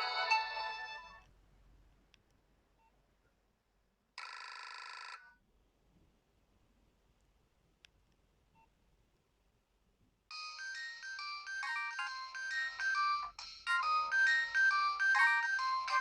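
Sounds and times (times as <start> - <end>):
polyphonic ringtone melody: 0.0 - 1.2, 10.3 - 16.0.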